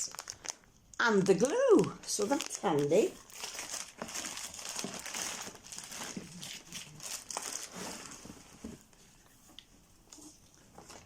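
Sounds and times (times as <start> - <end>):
plastic packaging crinkling: 0.0 - 8.6.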